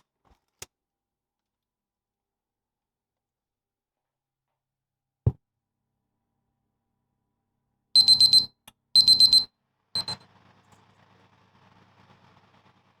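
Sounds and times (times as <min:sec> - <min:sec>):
oven beeper beeping: 0:08.0 - 0:10.2.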